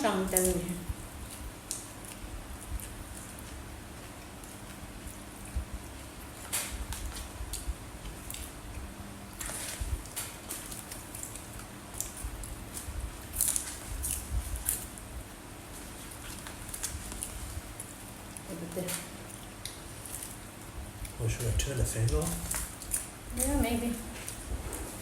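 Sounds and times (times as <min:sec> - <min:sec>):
crisp food crackling while eaten: 0:00.0 - 0:25.0
electric fan humming: 0:00.0 - 0:25.0.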